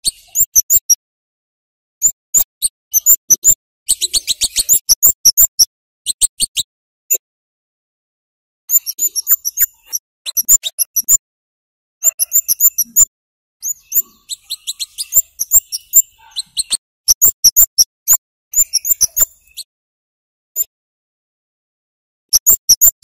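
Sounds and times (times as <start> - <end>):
bird calling high sharp notes: 12.0 - 19.7.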